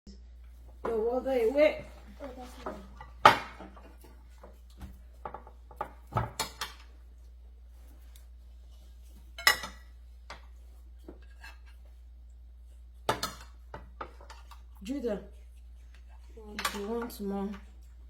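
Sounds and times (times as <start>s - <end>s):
plates and cutlery clinking: 0.8s - 6.9s, 9.0s - 11.8s, 13.1s - 14.7s, 16.0s - 17.7s.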